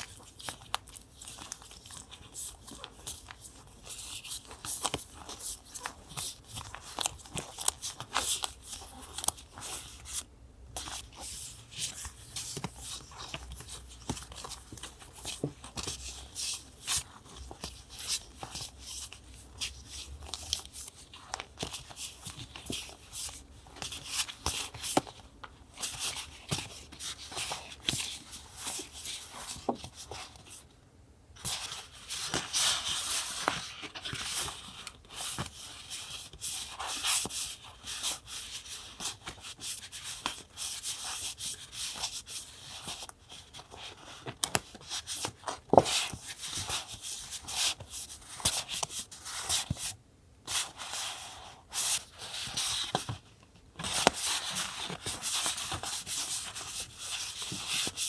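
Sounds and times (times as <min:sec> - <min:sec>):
paper rustling and rubbing: 0:00.0 - 0:10.2, 0:10.8 - 0:30.6, 0:31.4 - 0:58.0.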